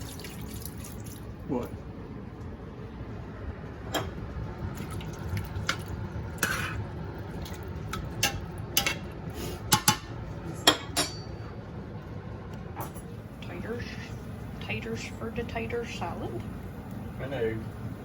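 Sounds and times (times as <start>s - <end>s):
steady low hum: 0.0s - 18.0s
dishes and utensils clinking: 7.4s - 9.1s, 9.7s - 11.4s.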